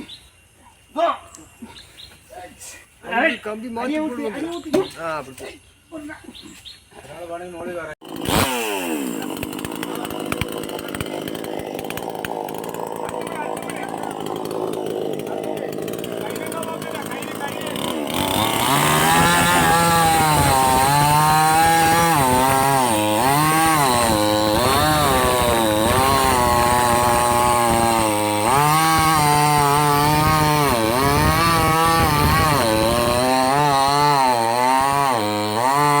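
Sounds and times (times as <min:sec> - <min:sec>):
chainsaw cutting wood: 0:08.0 - 0:36.0.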